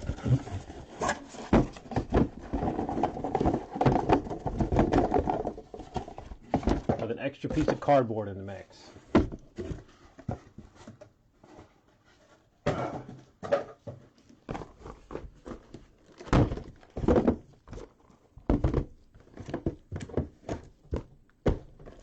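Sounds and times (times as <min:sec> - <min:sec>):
cardboard boxes knocking and thumping: 0:00.0 - 0:07.9, 0:08.9 - 0:22.0.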